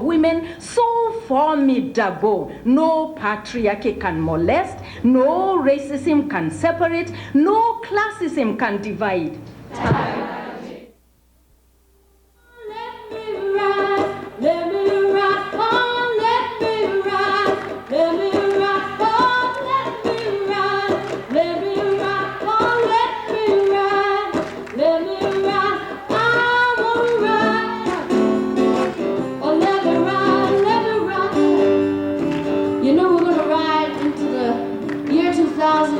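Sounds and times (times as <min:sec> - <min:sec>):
acoustic guitar: 0:12.4 - 0:35.9
woman singing: 0:12.4 - 0:35.9.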